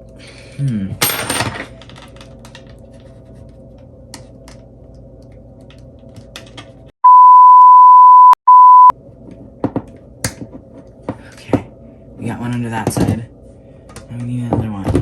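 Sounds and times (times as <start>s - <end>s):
high censor bleep: 7.0s - 8.9s.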